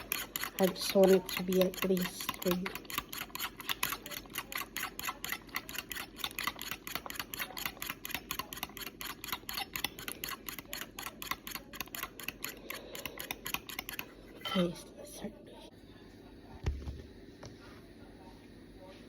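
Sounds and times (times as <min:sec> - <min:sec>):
fork clicking against bowl: 0:00.0 - 0:14.1.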